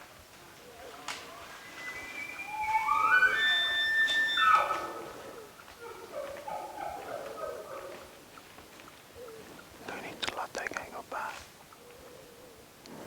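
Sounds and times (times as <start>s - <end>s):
elk bugling: 0.7s - 7.9s.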